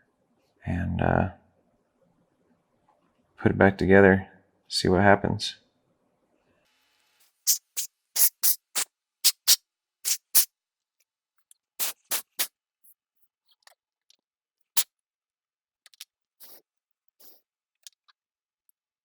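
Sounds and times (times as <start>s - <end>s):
puffs of blown air hissing: 7.5s - 10.5s, 11.8s - 12.5s.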